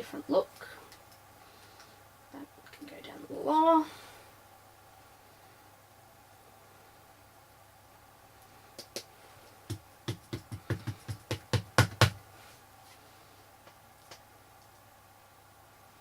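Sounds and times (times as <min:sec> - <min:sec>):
ink pad tapping on stamps: 0:09.7 - 0:12.2.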